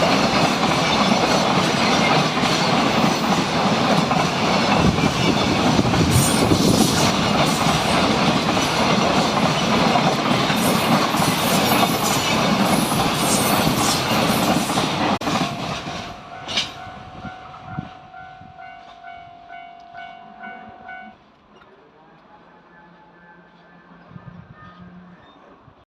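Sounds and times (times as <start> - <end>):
wheels clacking over rail joints: 0.0 - 16.9
freight train rumbling past: 0.0 - 25.8
level crossing warning bell: 15.4 - 21.2.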